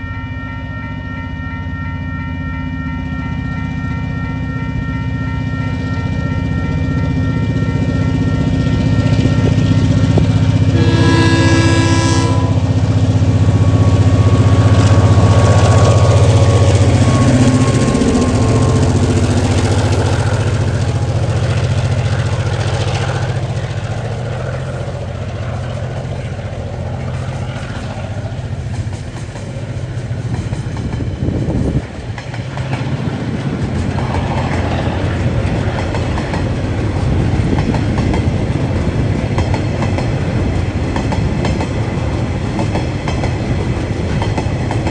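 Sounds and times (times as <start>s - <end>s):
locomotive horn: 0.0s - 28.3s
locomotive engine drone: 0.0s - 44.9s.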